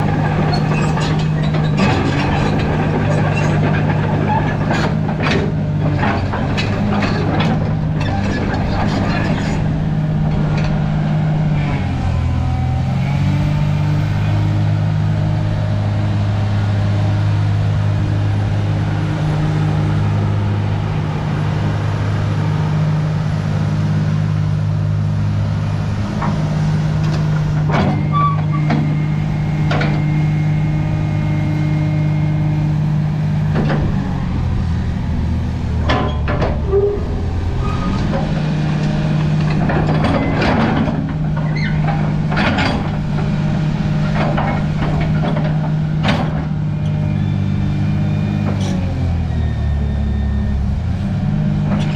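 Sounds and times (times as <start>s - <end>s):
excavator diesel engine running: 0.0s - 51.9s
metallic knocks and clanks: 35.8s - 37.2s.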